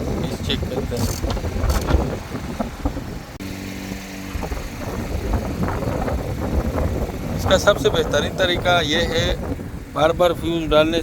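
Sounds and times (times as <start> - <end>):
low engine rumble: 0.0 - 11.0
knocks and clicks: 1.0 - 2.2.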